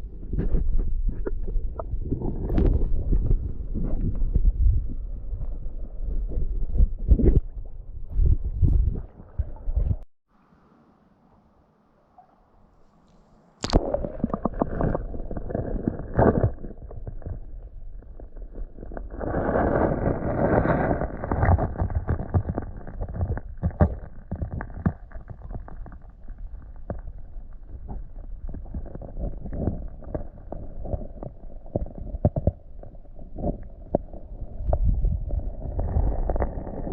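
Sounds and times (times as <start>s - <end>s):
underwater knocks and clicks: 0.1s - 10.0s, 13.6s - 36.9s
water swishing: 6.1s - 23.1s.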